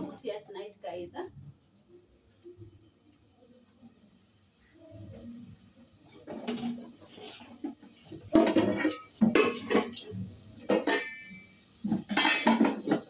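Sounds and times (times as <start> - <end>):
metal pots and utensils clattering: 6.0 - 13.0.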